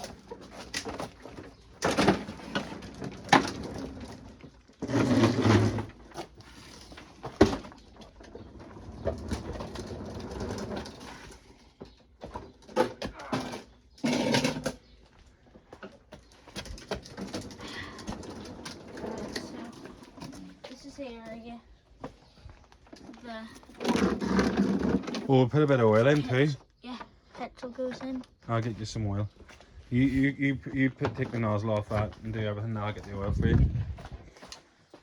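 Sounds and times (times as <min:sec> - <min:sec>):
knocks and scraping of lawnmower: 0:00.0 - 0:15.0, 0:15.8 - 0:20.8, 0:22.8 - 0:26.3.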